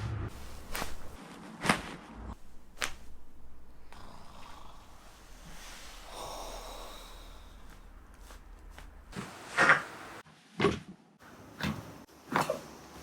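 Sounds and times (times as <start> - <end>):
soft rustling: 7.1 - 9.5.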